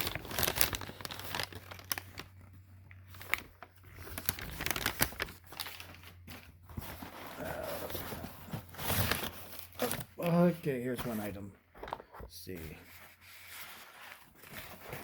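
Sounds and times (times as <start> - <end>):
paper being crumpled: 0.0 - 11.3.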